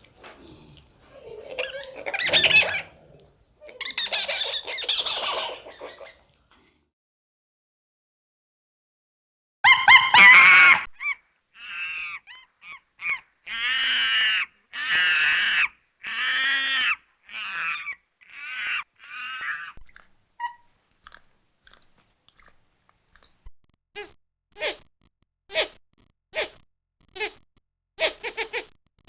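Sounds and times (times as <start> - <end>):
monkey calling: 0.0 - 6.4, 25.5 - 25.8, 26.4 - 27.4, 28.0 - 29.0.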